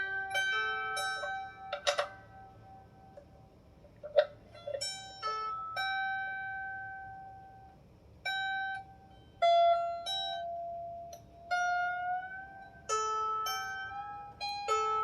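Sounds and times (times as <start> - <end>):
lyre harp strings plucked: 0.0 - 3.3.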